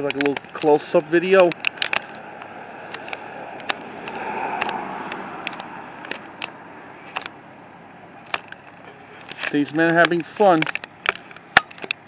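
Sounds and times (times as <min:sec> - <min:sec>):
sharp clicks and taps: 0:00.0 - 0:07.4, 0:08.2 - 0:12.0
vehicle passing: 0:00.7 - 0:10.1.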